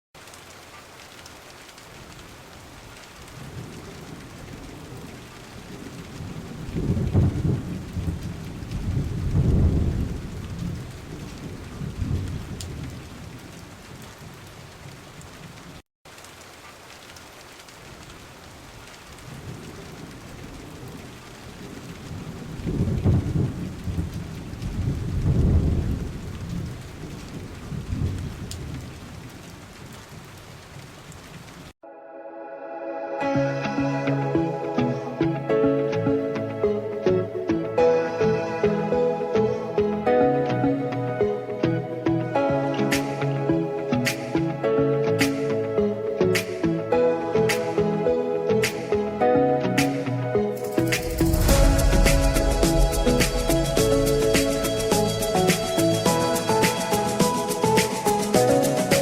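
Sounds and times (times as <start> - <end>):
steady rain: 0.2 - 31.8, 33.5 - 59.0
thunder rumbling: 2.6 - 14.3, 19.2 - 30.3, 50.6 - 59.0.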